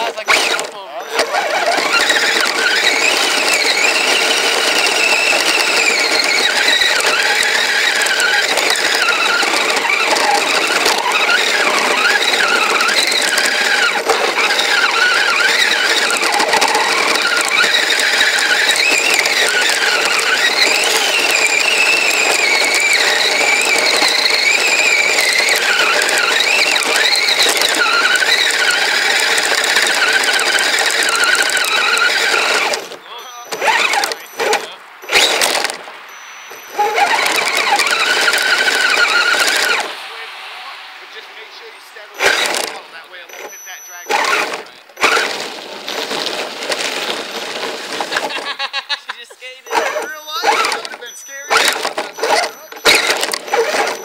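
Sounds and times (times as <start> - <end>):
drivetrain and track noise: 0.0 - 54.0
electric motor whining: 0.0 - 54.0.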